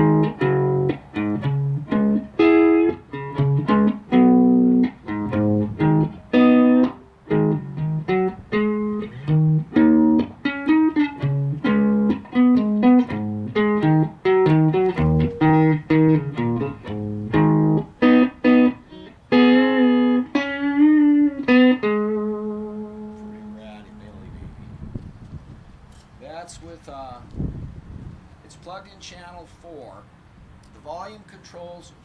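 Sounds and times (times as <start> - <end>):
electric guitar playing notes and chords: 0.0 - 25.2.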